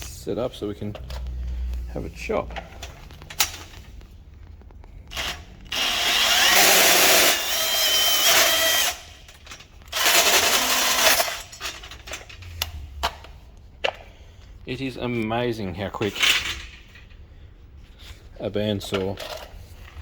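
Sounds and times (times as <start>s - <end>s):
band saw cutting metal tube: 5.7s - 9.2s, 9.9s - 11.4s.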